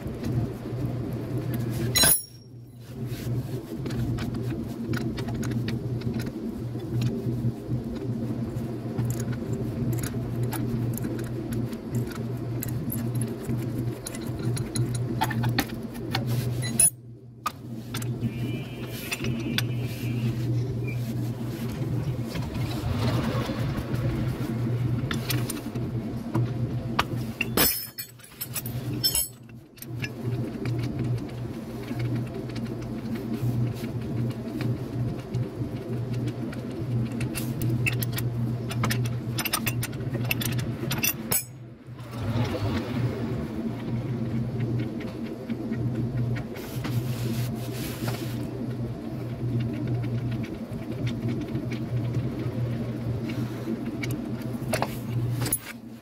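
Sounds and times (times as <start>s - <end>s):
low mechanical hum: 0.0s - 56.0s
metal hand tools clinking: 1.9s - 2.5s, 27.4s - 29.4s.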